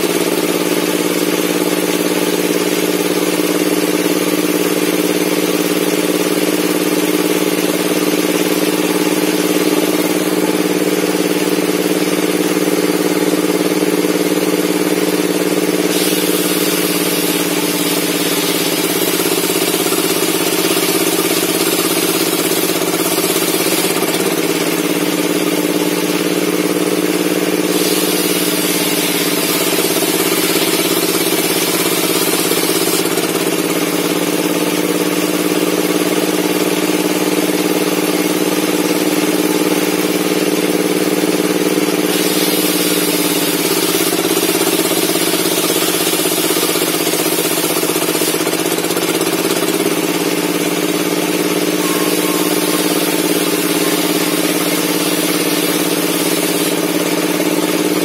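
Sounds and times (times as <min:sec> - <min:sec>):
saw blade cutting wood hiss: 0:15.3 - 0:25.5, 0:27.5 - 0:33.4, 0:42.0 - 0:50.1, 0:51.5 - 0:58.0.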